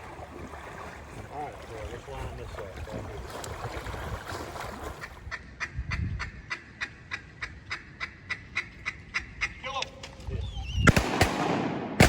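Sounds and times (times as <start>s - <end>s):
rushing wind or water: 0.0s - 7.6s.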